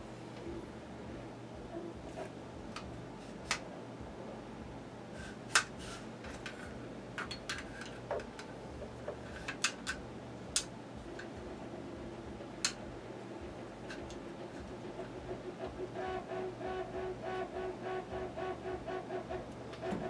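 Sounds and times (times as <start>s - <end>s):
low hum: 0.0s - 7.6s, 8.2s - 20.0s
tools and parts clicking: 7.2s - 8.5s.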